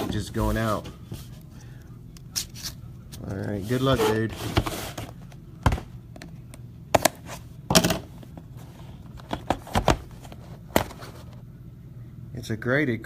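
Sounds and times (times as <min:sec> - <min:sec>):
clicks and knocks handling box: 0:09.1 - 0:11.4.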